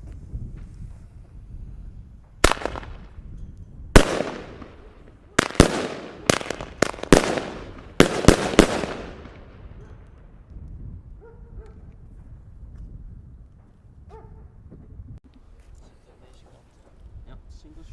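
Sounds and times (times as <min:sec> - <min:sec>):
fireworks bangs with echo: 0:02.4 - 0:03.2, 0:04.0 - 0:10.0.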